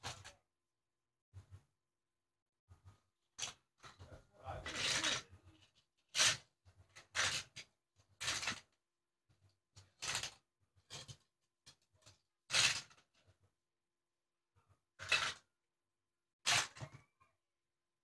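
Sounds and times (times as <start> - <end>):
toy cars crashing together: 8.2 - 8.7, 10.0 - 11.1, 12.5 - 13.0, 16.5 - 17.0.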